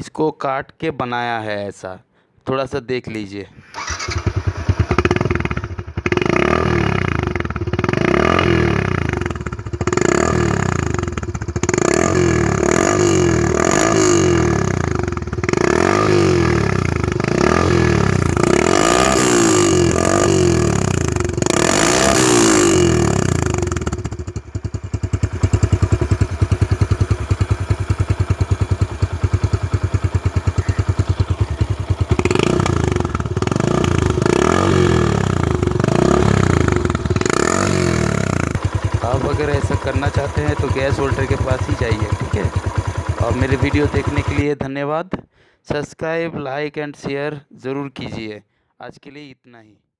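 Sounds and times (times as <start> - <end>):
motorcycle engine revving and idling: 3.7 - 44.5.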